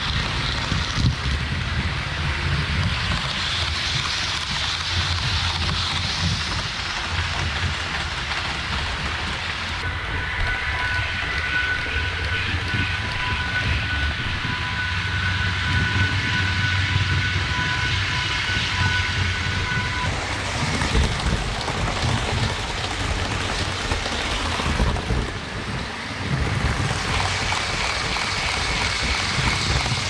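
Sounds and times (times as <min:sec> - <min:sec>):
model train wheels rumbling: 0:18.5 - 0:30.0.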